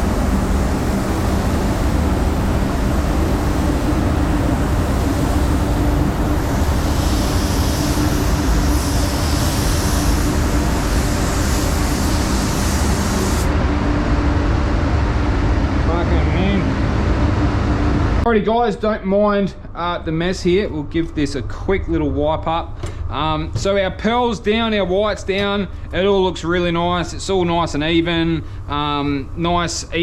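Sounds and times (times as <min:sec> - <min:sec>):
spray gun air hiss: 0:00.0 - 0:13.5
paint booth fans droning: 0:00.0 - 0:30.0.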